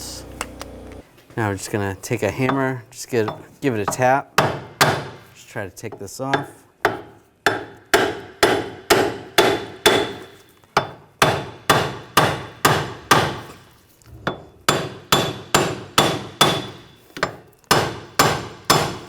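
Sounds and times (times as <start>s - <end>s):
hammer striking metal hub: 14.2s - 19.0s.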